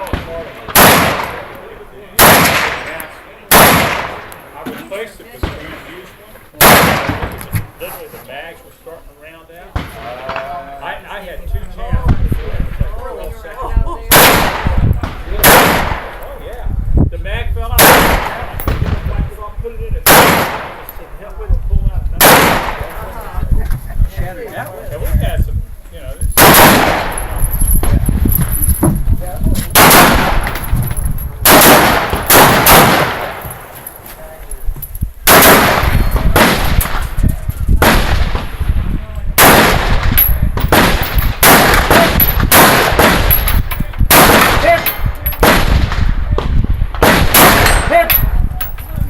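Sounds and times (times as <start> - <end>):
rifle shots: 0.0 - 1.5, 2.2 - 4.3, 6.6 - 7.4, 14.1 - 16.2, 17.8 - 19.1, 20.0 - 20.9, 22.2 - 22.9, 26.4 - 27.4, 29.7 - 30.8, 31.4 - 33.7, 35.2 - 37.1, 37.8 - 38.6, 39.4 - 46.2, 47.0 - 48.4.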